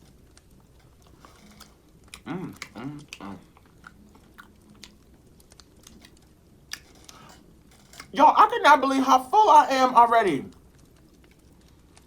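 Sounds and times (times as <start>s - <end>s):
chewing and biting food: 0.6s - 8.1s
mouth clicks: 2.1s - 5.0s.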